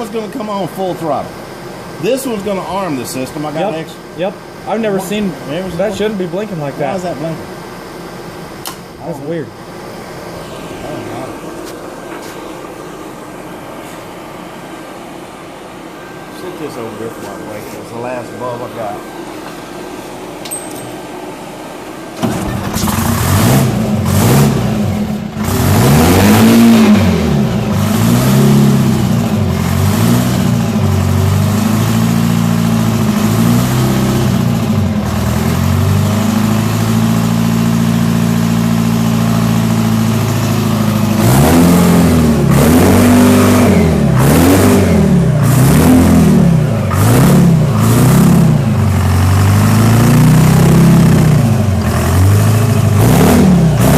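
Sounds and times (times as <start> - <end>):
tractor engine revving: 22.2 - 53.9.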